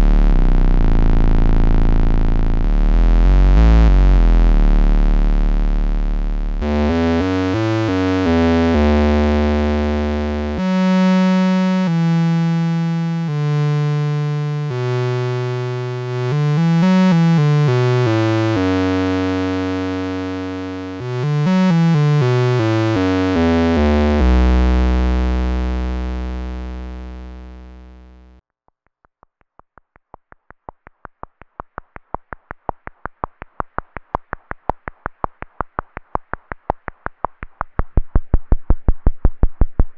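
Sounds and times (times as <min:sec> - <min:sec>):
low synthesizer notes: 0:00.0 - 0:28.4, 0:31.3 - 0:39.9
fast run of clicks: 0:29.3 - 0:39.9.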